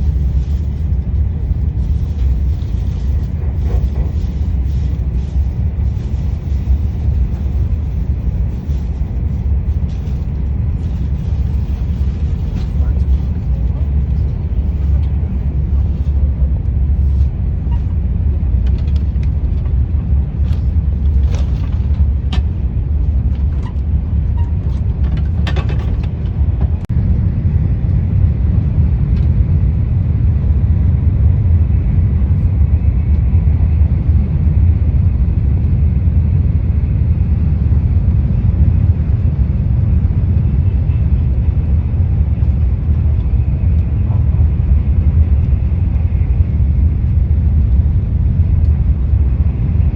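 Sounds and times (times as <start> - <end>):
train rumbling: 0.0 - 49.9.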